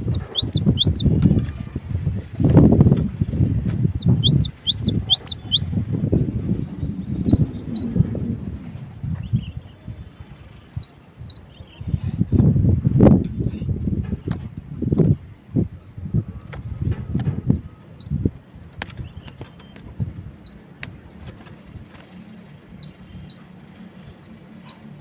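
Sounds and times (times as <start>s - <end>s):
bird singing high repeated notes: 0.0s - 1.2s, 3.9s - 5.8s, 6.6s - 8.0s, 10.4s - 11.8s, 15.4s - 16.2s, 17.5s - 18.3s, 20.0s - 20.6s, 22.4s - 25.0s
low rumbling fluttering noise: 0.0s - 23.0s.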